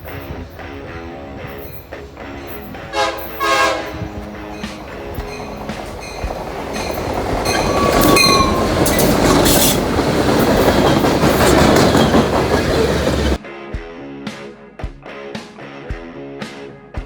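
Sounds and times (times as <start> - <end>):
freight train rumbling past: 0.0 - 13.4
high wheel squeal: 0.0 - 13.4.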